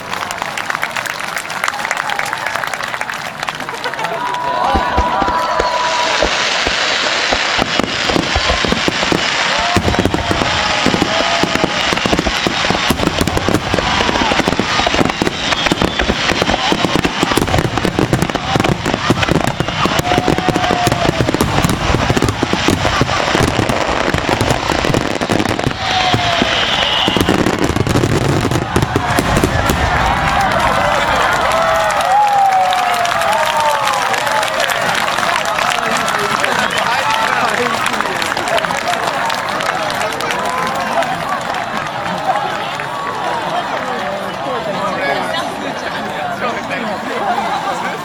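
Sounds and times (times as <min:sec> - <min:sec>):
fireworks crackling and popping: 0:00.0 - 0:43.9
heavy firework bangs: 0:04.6 - 0:32.4.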